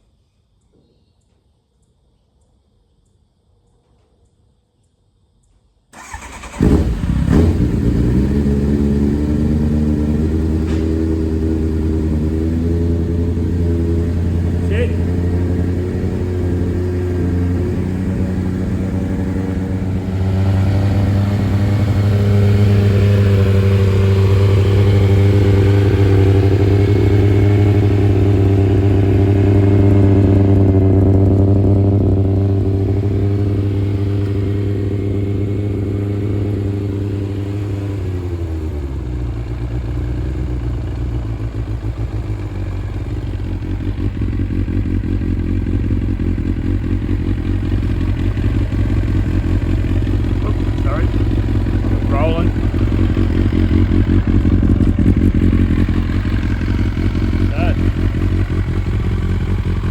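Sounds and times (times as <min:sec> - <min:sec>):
motorcycle engine idling: 0:06.0 - 0:59.9.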